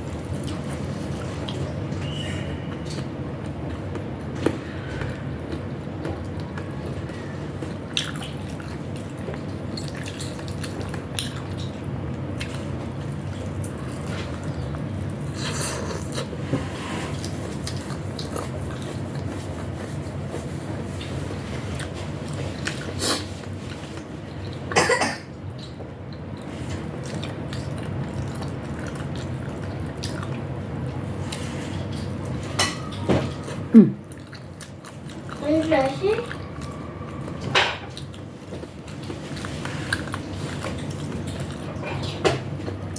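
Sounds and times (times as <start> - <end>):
low background hum: 0.0 - 42.9.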